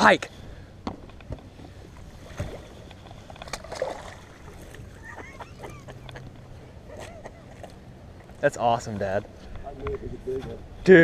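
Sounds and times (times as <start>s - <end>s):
low steady hum: 0.1s - 11.0s
water splashing: 1.8s - 6.2s.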